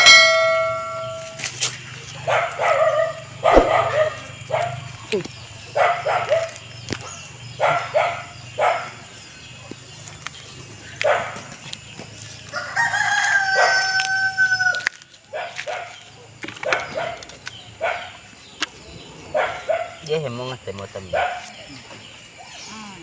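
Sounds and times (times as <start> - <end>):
dog barking: 2.2 - 4.8, 5.7 - 6.6, 7.6 - 9.0, 11.0 - 11.5, 15.3 - 18.2, 19.3 - 20.1, 21.1 - 21.6
rooster crowing: 12.5 - 15.0.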